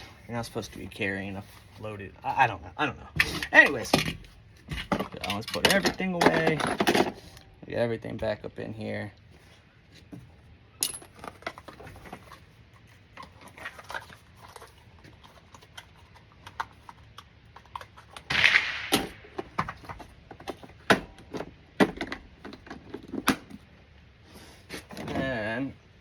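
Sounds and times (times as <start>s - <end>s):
gear clicks and knocks: 3.2s - 7.5s.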